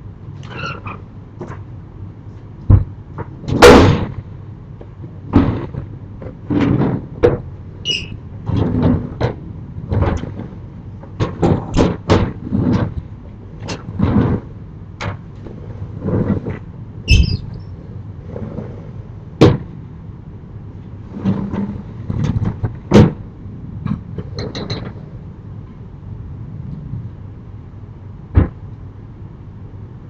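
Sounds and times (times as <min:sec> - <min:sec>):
shutters rumbling and banging: 0:00.0 - 0:29.1
high squeak: 0:07.8 - 0:08.2, 0:17.1 - 0:17.7.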